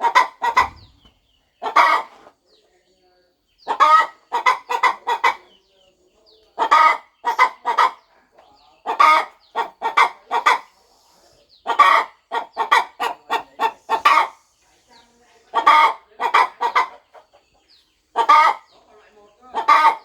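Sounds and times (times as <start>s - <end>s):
hen clucking: 0.0s - 2.8s, 3.5s - 20.0s.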